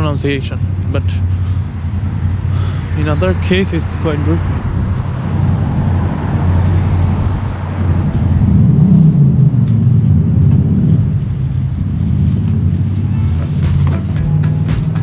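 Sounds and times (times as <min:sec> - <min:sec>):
traffic low rumble: 0:00.0 - 0:15.0
sharp rhythmic ticks: 0:13.3 - 0:15.0.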